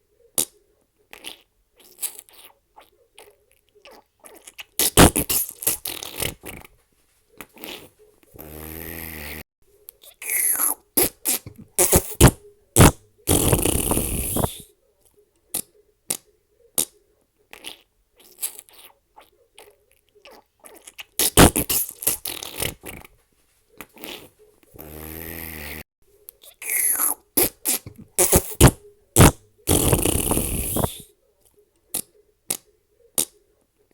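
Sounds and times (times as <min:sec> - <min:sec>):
fart sound effects: 0:04.8 - 0:06.7, 0:07.6 - 0:09.4, 0:10.2 - 0:14.6, 0:21.2 - 0:23.1, 0:24.0 - 0:25.8, 0:26.6 - 0:31.0.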